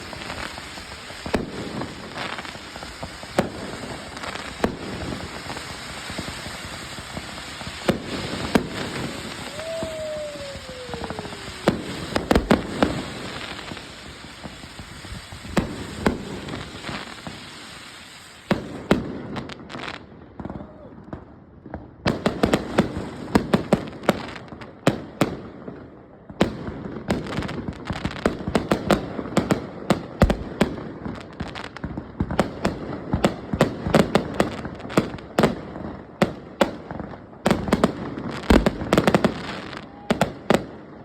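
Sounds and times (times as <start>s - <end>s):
fireworks bangs: 0.0s - 41.0s
fireworks crackle: 0.0s - 41.0s
falling whistle: 8.8s - 12.6s.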